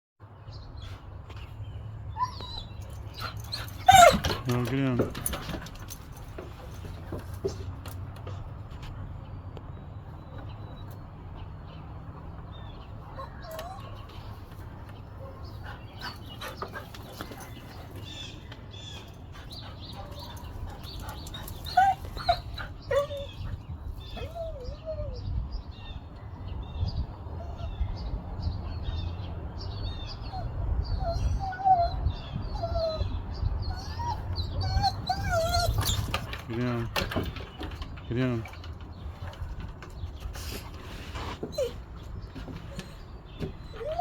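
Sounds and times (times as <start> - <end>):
dog whining and whimpering: 2.1 - 4.4, 13.1 - 14.2, 21.4 - 25.4, 30.2 - 36.4, 41.2 - 42.0, 43.6 - 44.0.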